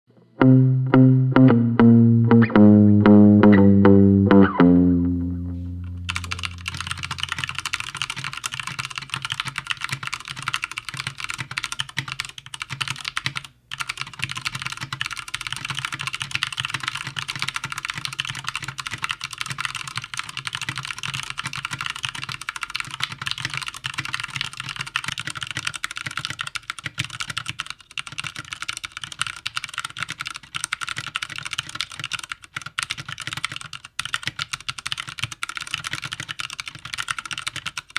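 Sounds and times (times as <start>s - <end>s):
guitar music: 0.2s - 7.4s
fast mechanical keyboard typing: 6.1s - 37.9s.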